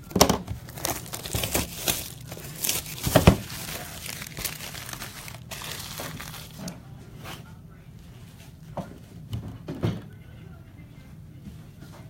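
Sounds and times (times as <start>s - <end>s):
plastic wrapping crinkling and tearing: 0.0s - 6.8s.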